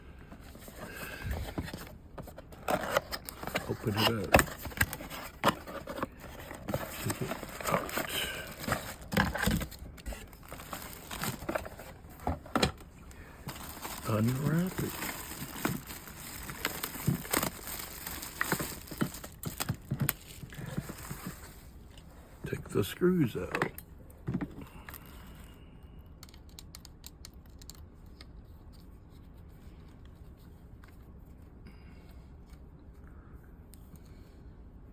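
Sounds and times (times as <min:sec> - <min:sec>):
packaging crinkling and rustling: 0:00.4 - 0:22.1.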